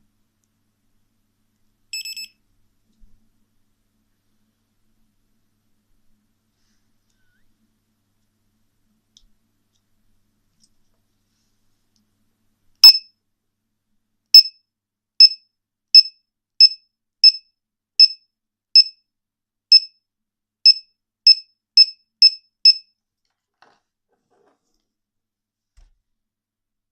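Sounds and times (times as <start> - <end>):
short high alarm beeps: 2.0 - 2.3, 12.8 - 13.1, 14.4 - 14.6, 15.2 - 15.4, 16.0 - 17.4, 18.0 - 18.2, 18.8 - 19.0, 19.7 - 19.9, 20.7 - 22.9.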